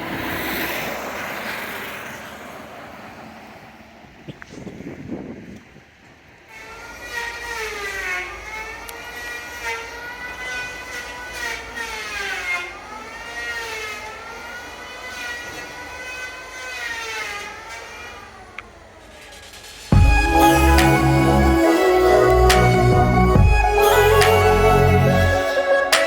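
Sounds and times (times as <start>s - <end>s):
motor whining: 19.9s - 26.0s.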